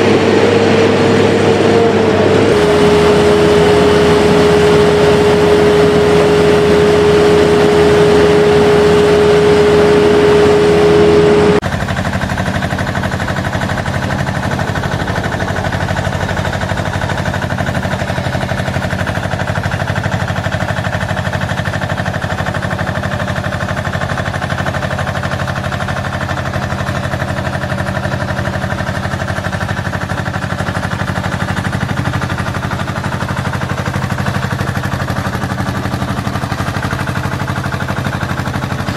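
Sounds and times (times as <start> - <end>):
high whine: 0.0 - 23.2
diesel construction machinery engines: 0.0 - 38.9
fast rattle: 11.6 - 38.9.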